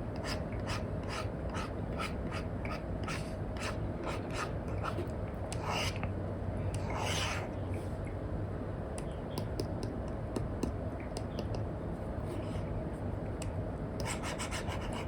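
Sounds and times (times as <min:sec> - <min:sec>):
stylus scratching on screen: 0:14.0 - 0:15.0.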